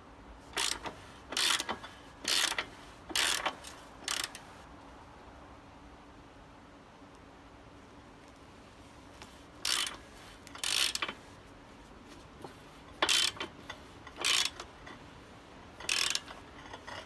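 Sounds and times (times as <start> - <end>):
torque wrench ratchet clicking: 0.5 - 4.5, 9.6 - 11.2, 12.4 - 15.1, 15.8 - 17.0.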